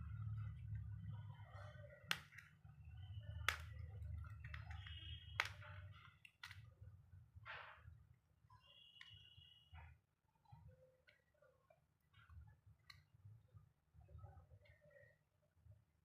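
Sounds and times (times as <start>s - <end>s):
low steady hum: 0.0s - 7.4s.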